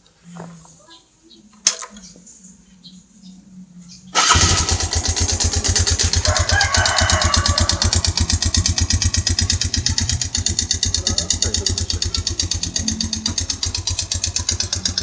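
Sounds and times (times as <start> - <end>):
motorcycle engine starting and idling: 4.1 - 15.0.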